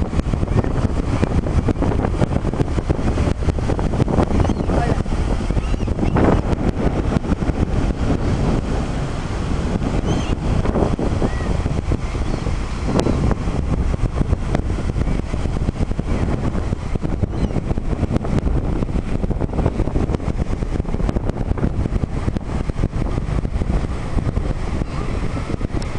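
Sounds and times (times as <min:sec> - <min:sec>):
wind buffeting microphone: 0:00.0 - 0:25.9.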